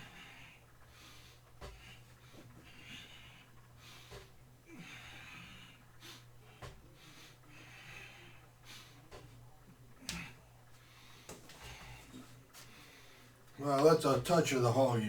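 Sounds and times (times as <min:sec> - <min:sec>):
man breathing hard: 0:00.0 - 0:09.2.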